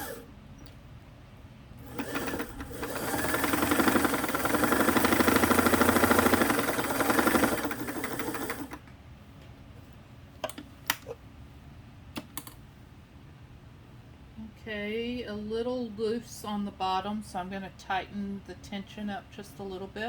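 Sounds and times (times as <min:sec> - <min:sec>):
sewing machine stitching: 0:00.0 - 0:00.2, 0:01.8 - 0:08.8.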